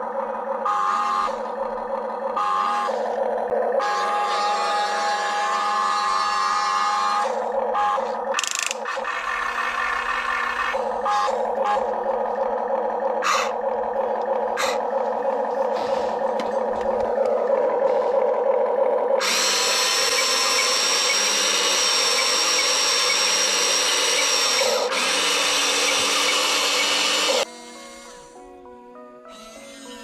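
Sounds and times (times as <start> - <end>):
small electric motors whirring: 3.9 - 12.6, 13.2 - 28.6, 29.3 - 30.0
faint music: 27.4 - 30.0.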